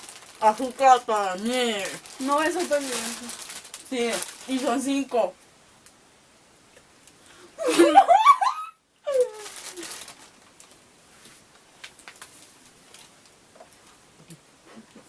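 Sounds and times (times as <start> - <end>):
faint clicks and rustles: 0.0 - 6.0, 9.1 - 15.0
woman laughing: 7.6 - 9.5.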